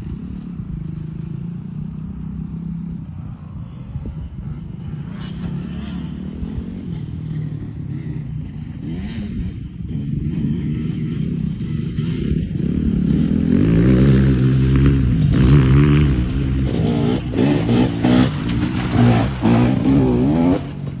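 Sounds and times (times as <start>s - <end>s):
two-stroke motocross engine revving: 4.5s - 21.0s.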